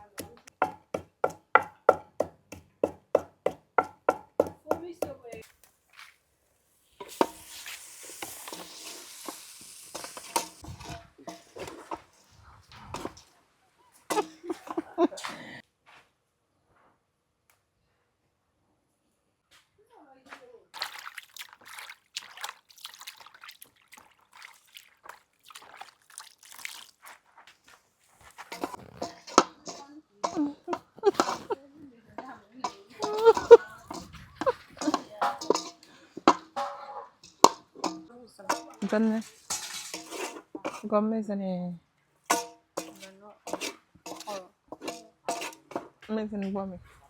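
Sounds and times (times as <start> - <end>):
spoon knocking against pot: 0.2 - 5.4, 14.1 - 15.0, 28.5 - 31.6, 32.2 - 40.8, 42.3 - 45.9
food sizzling in a pot: 6.6 - 13.3, 14.1 - 15.1, 28.3 - 31.6, 32.2 - 40.9, 42.3 - 46.0
water trickling and sloshing: 20.7 - 30.0.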